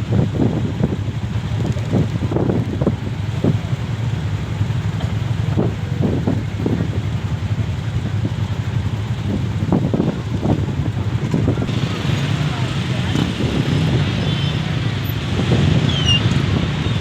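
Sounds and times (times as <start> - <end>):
ferry engine drone: 0.0 - 17.0
wind buffeting microphone: 9.2 - 17.0.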